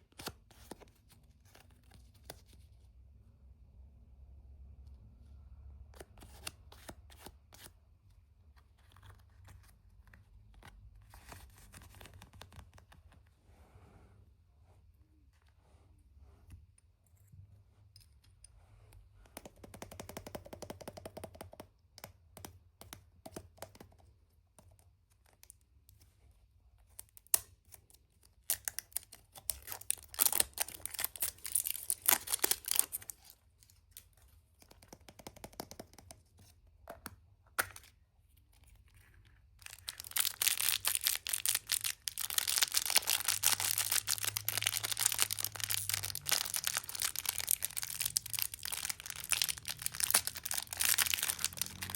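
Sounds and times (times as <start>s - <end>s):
packaging crinkling: 28.6s - 33.3s, 39.6s - 51.9s.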